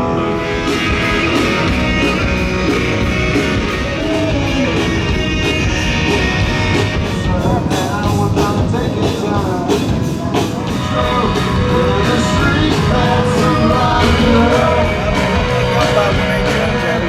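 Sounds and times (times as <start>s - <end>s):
rock guitar: 0.0s - 17.0s
steady drum beat: 0.0s - 17.0s
person singing: 10.8s - 17.0s.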